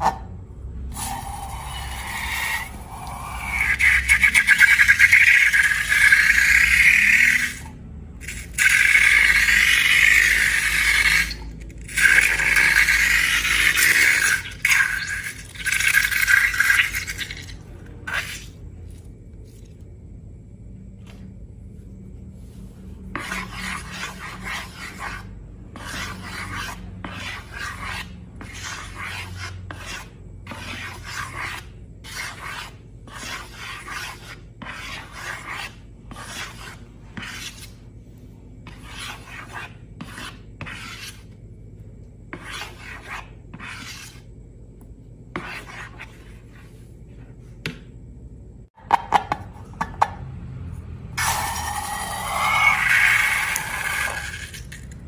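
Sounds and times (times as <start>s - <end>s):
rasping scraping strokes: 1.5s - 7.6s, 23.1s - 37.8s, 51.2s - 54.7s.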